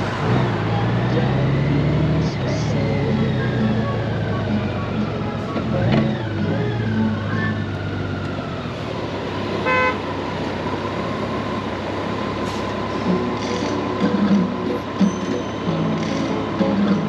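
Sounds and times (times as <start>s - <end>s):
motorcycle engine hum: 0.0s - 17.0s
wind and road noise: 0.0s - 17.0s
motorcycle horn toot: 9.6s - 10.0s.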